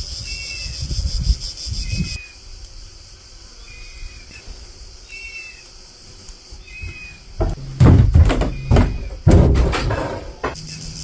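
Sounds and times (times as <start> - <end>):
wind rumbling on microphone: 0.0 - 2.6
insect chorus buzzing: 0.0 - 11.0.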